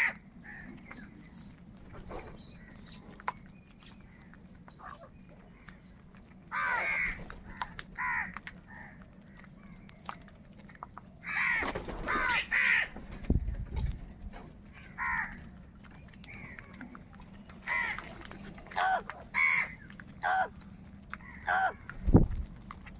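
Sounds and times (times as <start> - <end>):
crows cawing: 6.5 - 8.9, 11.2 - 13.0, 14.8 - 15.4, 17.6 - 18.1, 18.8 - 20.5, 21.2 - 21.8.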